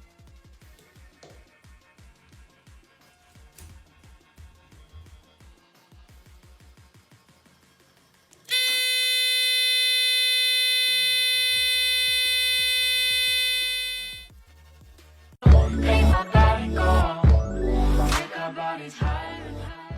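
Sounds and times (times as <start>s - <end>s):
doorbell buzzer: 8.5s - 14.3s
background music: 15.0s - 19.9s.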